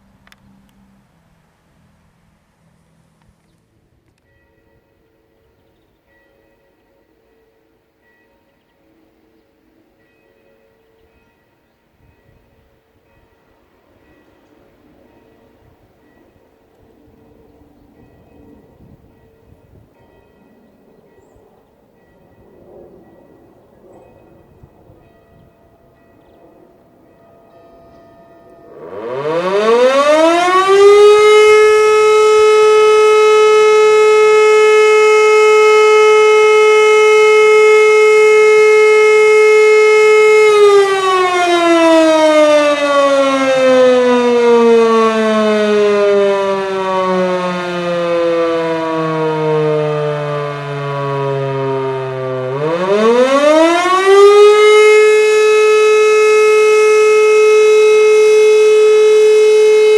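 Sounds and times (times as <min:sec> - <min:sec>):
electromechanical siren wailing: 0:28.6 - 0:59.9.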